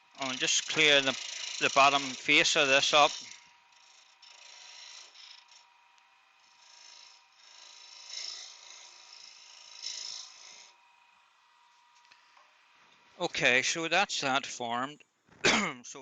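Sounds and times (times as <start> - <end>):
turning tool cutting wood: 0.0 - 13.5
lathe faint whine: 0.0 - 15.0.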